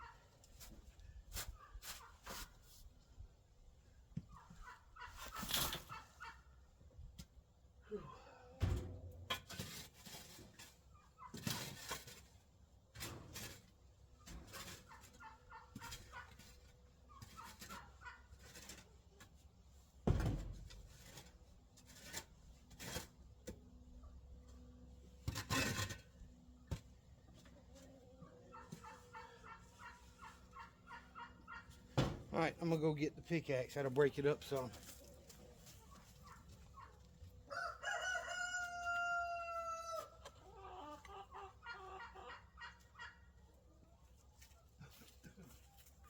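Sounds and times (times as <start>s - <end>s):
chickens calling: 4.2s - 6.6s, 14.5s - 18.4s, 27.4s - 44.2s.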